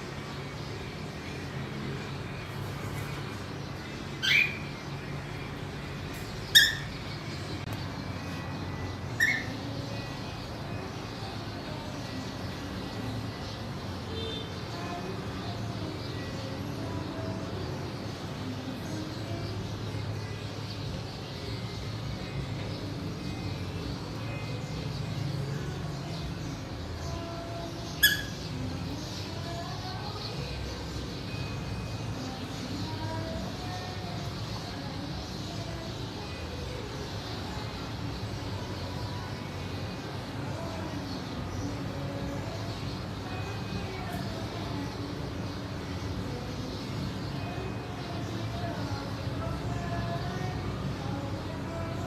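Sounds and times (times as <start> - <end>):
low background noise: 0.0 - 52.0
cockatiel calls: 6.5 - 6.9, 9.2 - 9.6, 28.0 - 28.4.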